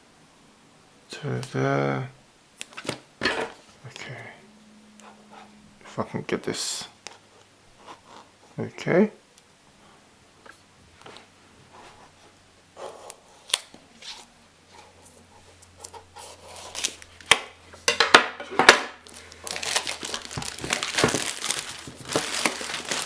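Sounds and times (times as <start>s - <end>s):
packaging clicks and scrapes: 15.8s - 17.1s, 19.0s - 23.0s
packaging crinkling and tearing: 15.8s - 17.3s, 18.9s - 23.0s.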